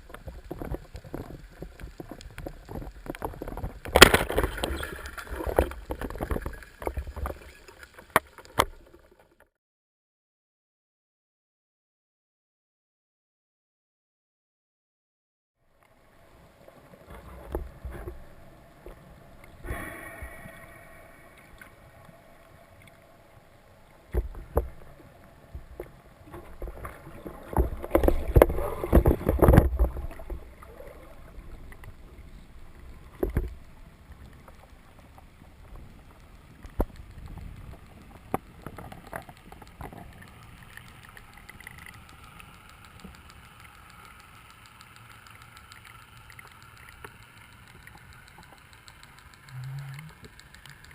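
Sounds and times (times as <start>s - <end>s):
muffled underwater noise: 48.0s - 50.9s.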